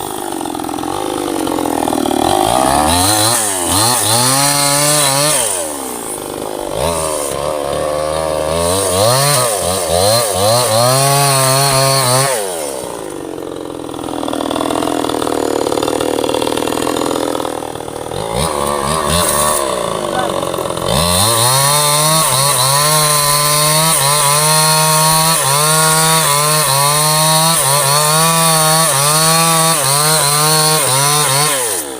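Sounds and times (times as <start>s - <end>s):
chainsaw cutting log: 0.0s - 31.9s.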